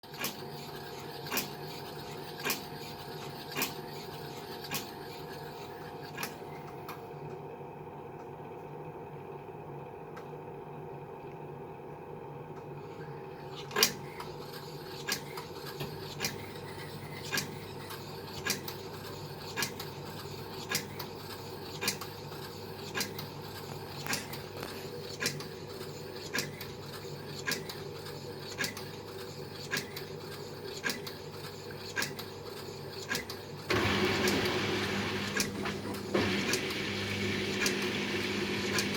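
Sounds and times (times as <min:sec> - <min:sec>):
laundry machine humming: 0:32.8 - 0:38.9.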